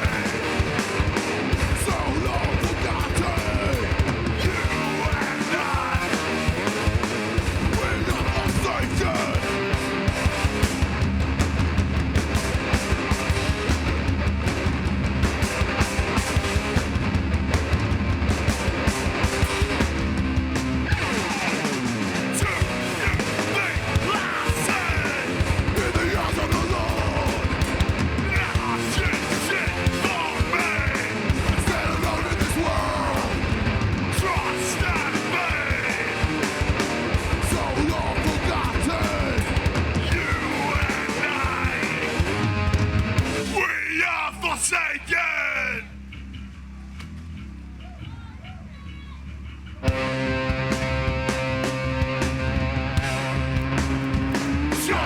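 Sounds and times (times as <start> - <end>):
drum kit beat: 0.0 - 43.7, 49.8 - 55.0
distorted electric guitars: 0.0 - 46.1, 49.7 - 55.0
bass guitar: 0.0 - 55.0
vocalist screaming: 22.3 - 36.6, 37.3 - 42.4, 43.5 - 45.9, 54.7 - 55.0.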